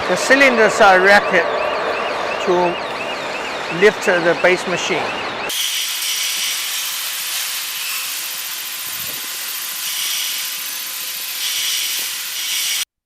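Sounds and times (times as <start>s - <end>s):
hydraulic hiss: 5.5s - 12.8s.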